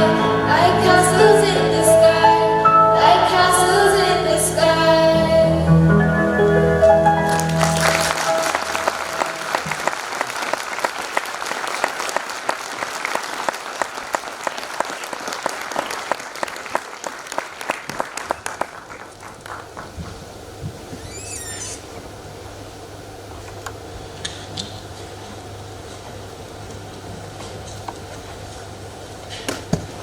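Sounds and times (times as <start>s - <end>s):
sustained sung note: 0.0s - 9.9s
audience applause: 7.0s - 20.0s.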